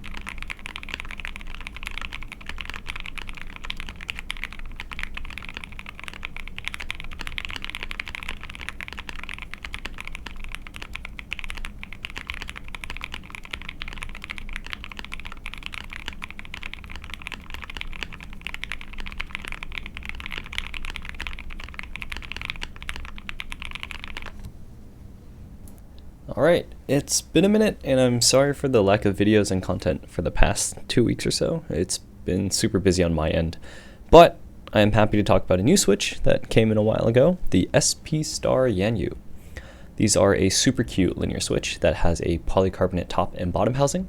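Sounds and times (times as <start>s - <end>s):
fast typing on mechanical keyboard: 0.0s - 24.5s.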